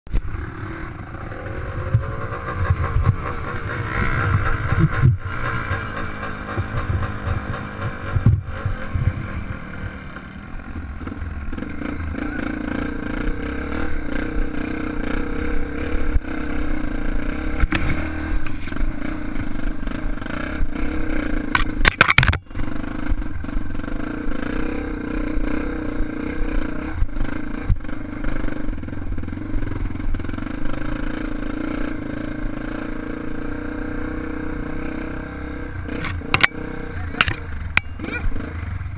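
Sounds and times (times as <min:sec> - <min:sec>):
loud engine crackle: 0:00.1 - 0:12.8
motorcycle engine running: 0:00.1 - 0:38.9.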